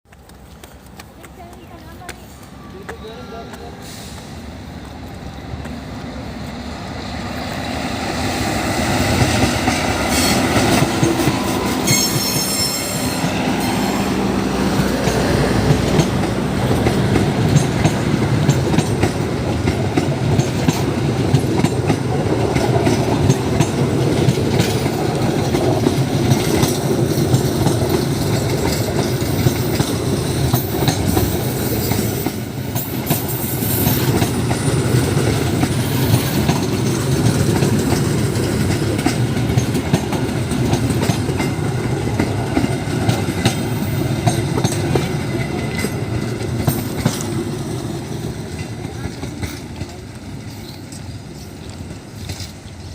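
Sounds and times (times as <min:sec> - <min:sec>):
train passing: 0:00.1 - 0:52.9
high squeal: 0:11.3 - 0:14.0
wheels clattering over rail joints: 0:14.6 - 0:52.9.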